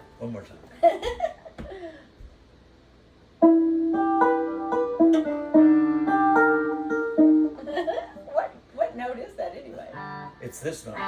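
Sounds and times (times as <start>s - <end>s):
electric banjo plucked melody: 3.4s - 8.4s, 9.9s - 11.0s.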